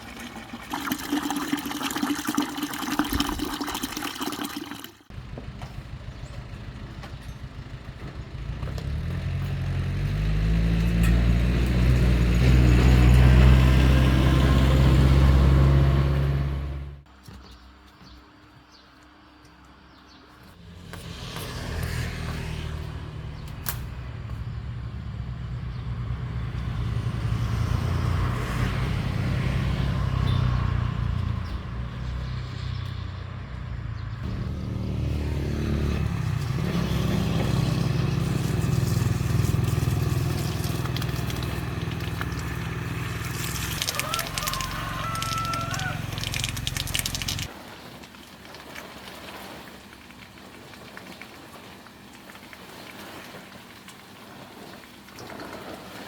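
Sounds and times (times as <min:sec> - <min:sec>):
small engine running: 0:34.2 - 0:47.5.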